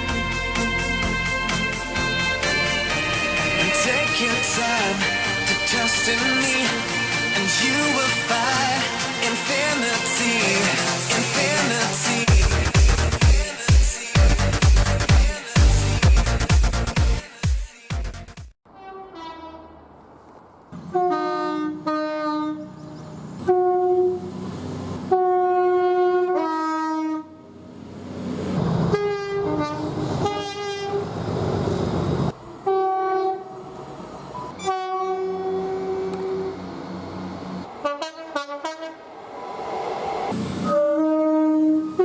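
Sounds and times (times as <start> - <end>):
two-tone train horn blasts: 0.0 - 9.0, 18.7 - 19.8, 20.8 - 22.8, 23.4 - 24.4, 25.0 - 27.5, 28.9 - 31.1, 32.6 - 33.6, 34.5 - 36.7, 37.8 - 39.0, 40.5 - 42.0
train running by: 0.0 - 13.8, 18.7 - 42.0.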